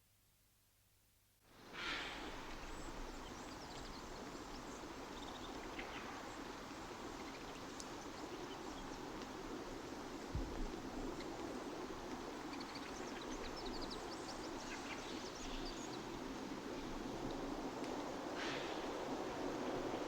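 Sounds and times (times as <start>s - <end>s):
steady outdoor background noise: 1.5s - 20.0s.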